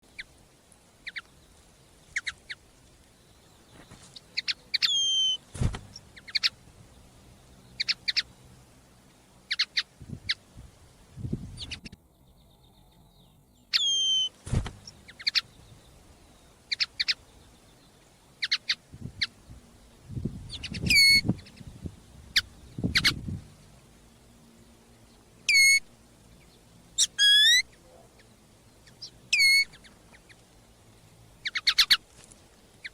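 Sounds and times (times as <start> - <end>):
bird calling: 1.0 - 1.4, 2.1 - 2.7, 3.3 - 6.6, 7.4 - 8.4, 9.4 - 10.4, 13.6 - 19.4, 20.5 - 21.6, 22.3 - 23.7, 25.4 - 30.4, 31.4 - 32.2.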